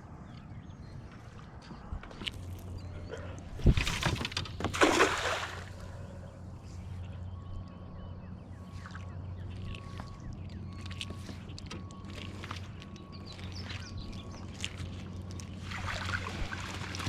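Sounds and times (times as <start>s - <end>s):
water splashing: 3.6s - 6.0s, 12.1s - 17.0s.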